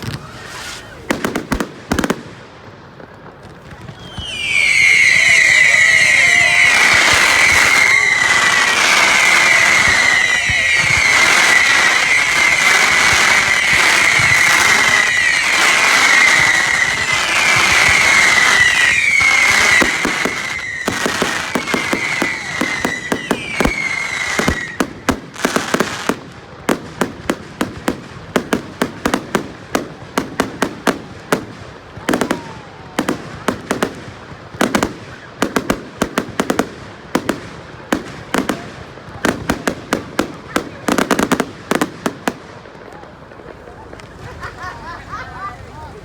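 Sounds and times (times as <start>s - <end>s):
fireworks hissing and whistling: 0.0s - 2.2s, 3.0s - 26.4s, 27.0s - 46.0s
fireworks bangs and cracks: 0.0s - 46.0s.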